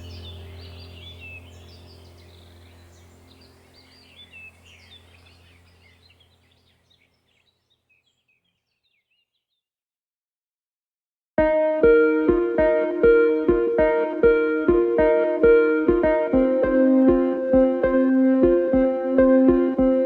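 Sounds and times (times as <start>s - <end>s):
low steady hum: 0.0s - 7.0s, 11.4s - 20.0s
small birds chirping: 0.0s - 9.6s.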